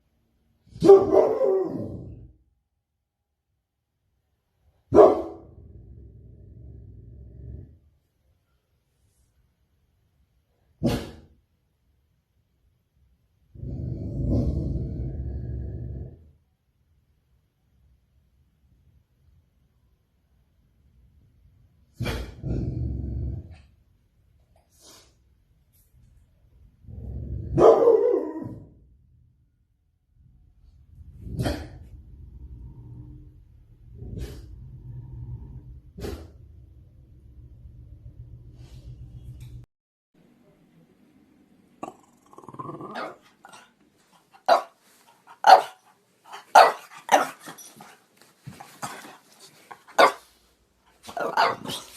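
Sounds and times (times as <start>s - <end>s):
dog barking: 0.8s - 1.9s, 4.9s - 5.5s, 10.8s - 11.3s, 27.6s - 28.5s, 44.4s - 47.4s, 49.9s - 50.3s, 51.0s - 51.9s.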